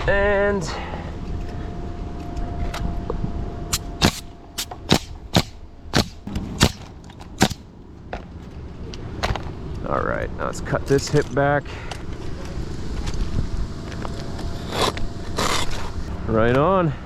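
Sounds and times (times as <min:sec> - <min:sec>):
nail gun firing into shingles: 0:03.7 - 0:07.7.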